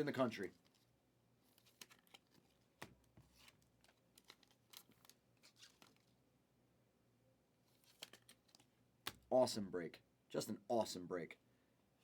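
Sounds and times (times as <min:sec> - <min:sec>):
trading cards clicking and rustling: 0:01.5 - 0:06.1, 0:07.8 - 0:09.2.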